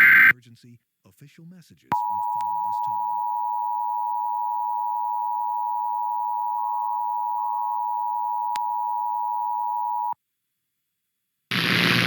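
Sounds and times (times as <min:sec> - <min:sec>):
two-tone alert signal: 0:01.9 - 0:10.2.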